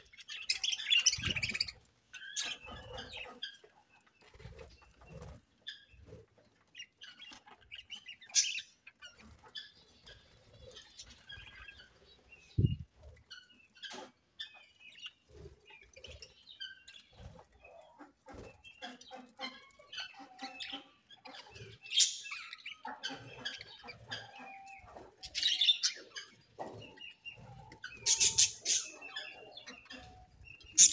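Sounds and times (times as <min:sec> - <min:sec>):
budgerigars chattering: 0:00.0 - 0:06.0, 0:16.4 - 0:30.9
harsh bird squawks: 0:28.0 - 0:29.2.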